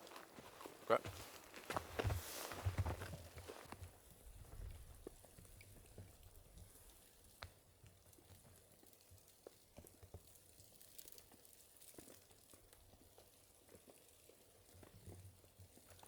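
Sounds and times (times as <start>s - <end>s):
faint light ticks: 5.0s - 10.2s.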